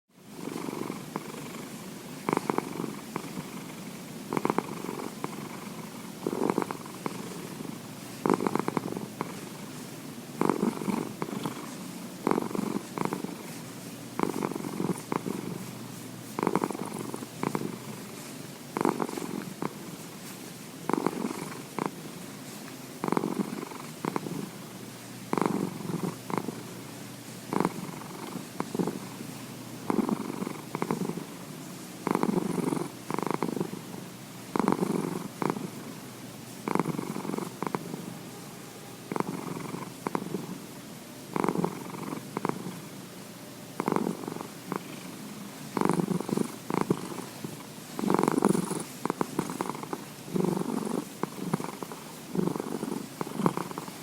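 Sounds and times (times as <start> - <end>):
cat purring: 0.3 - 43.0, 43.7 - 54.0.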